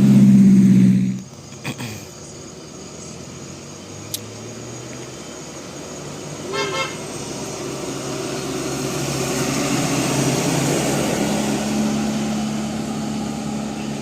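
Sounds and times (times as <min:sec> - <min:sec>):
bus engine and road noise: 0:00.0 - 0:14.0
bus horn toot: 0:06.4 - 0:07.2.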